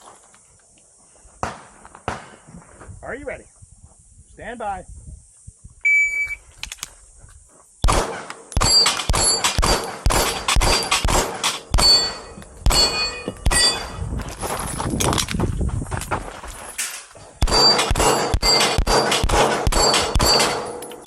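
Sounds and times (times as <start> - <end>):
pistol shots: 7.8 - 14.0, 17.4 - 21.0
steel targets ringing: 11.7 - 14.0, 17.4 - 19.1, 19.7 - 21.0.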